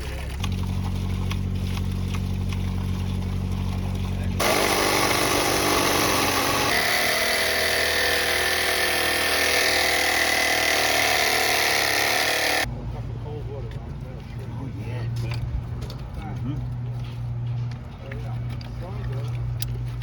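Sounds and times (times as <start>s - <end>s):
motor hum: 0.0s - 12.7s.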